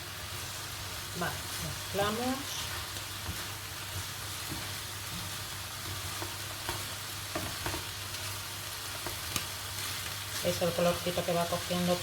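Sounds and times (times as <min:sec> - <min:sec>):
food sizzling in oil in a frying pan: 0:00.0 - 0:12.0.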